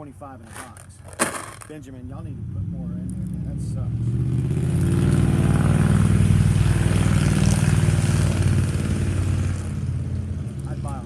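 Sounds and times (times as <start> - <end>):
vehicle engine running loudly: 3.1 - 11.0.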